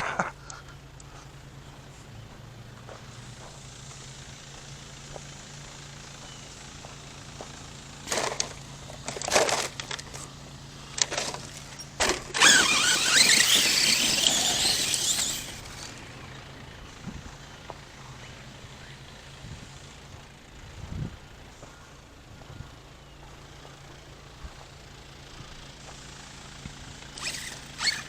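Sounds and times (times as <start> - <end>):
tyres churning dirt: 0.0 - 20.8
electric motor whining: 12.0 - 16.4, 27.0 - 28.0.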